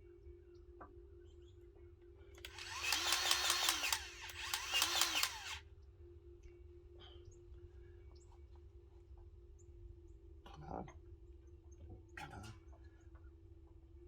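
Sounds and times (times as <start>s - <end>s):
grease gun pump clicking: 2.5s - 5.6s.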